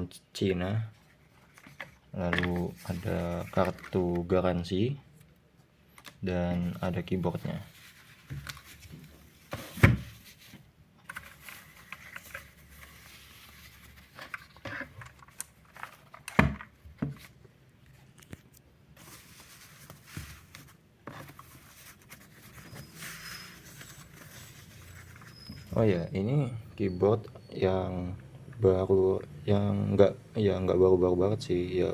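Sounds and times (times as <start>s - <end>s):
packaging rustling and crinkling: 1.1s - 4.3s, 5.9s - 17.4s, 18.0s - 25.9s.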